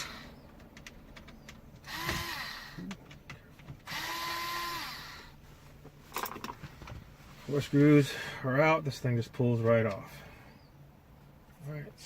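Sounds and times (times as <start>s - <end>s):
power screwdriver spinning: 1.9s - 2.6s, 3.9s - 5.2s.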